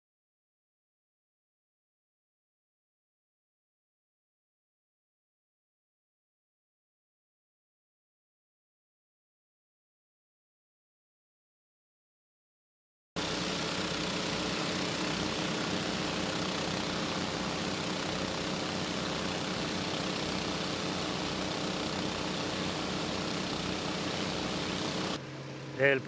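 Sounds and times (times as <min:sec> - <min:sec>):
engine humming steadily: 0:13.2 - 0:26.0.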